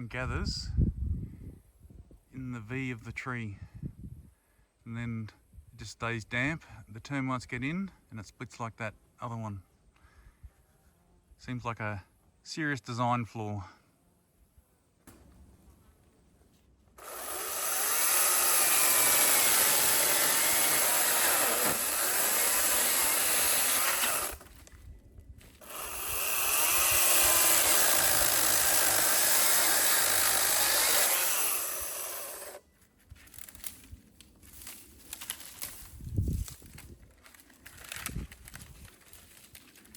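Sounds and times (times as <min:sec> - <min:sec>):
chainsaw cutting timber: 0:17.0 - 0:24.6, 0:25.6 - 0:32.6.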